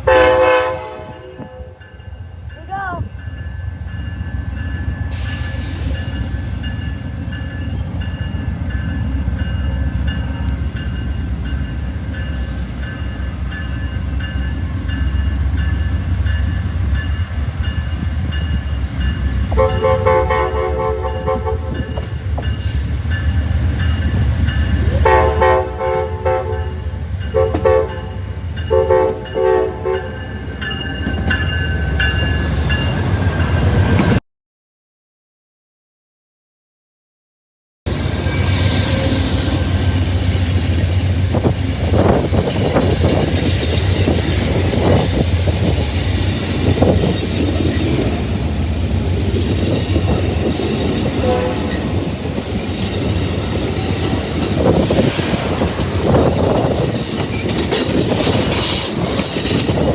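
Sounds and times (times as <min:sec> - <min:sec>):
train horn blasts: 0:00.0 - 0:01.8, 0:19.5 - 0:21.9, 0:24.9 - 0:30.2, 0:51.0 - 0:52.0
train rumbling: 0:00.0 - 0:34.2, 0:37.9 - 0:59.9.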